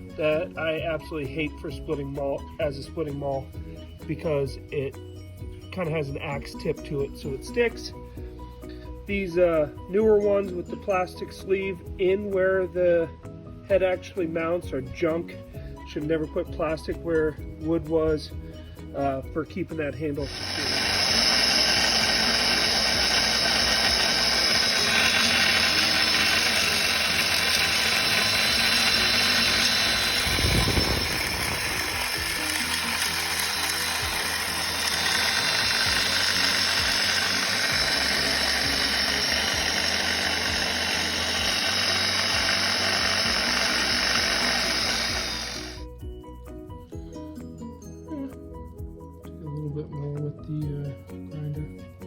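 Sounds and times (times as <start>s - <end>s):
angle grinder grinding steel: 20.2s - 45.9s.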